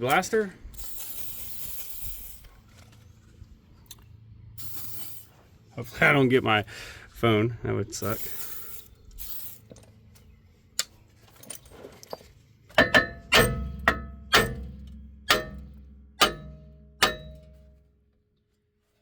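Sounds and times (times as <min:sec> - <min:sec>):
metal clinks ringing: 0:12.8 - 0:17.7.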